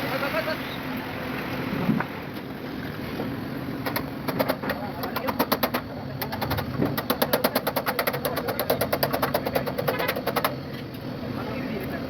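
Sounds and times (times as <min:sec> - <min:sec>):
rapid even tapping: 0:03.8 - 0:10.6.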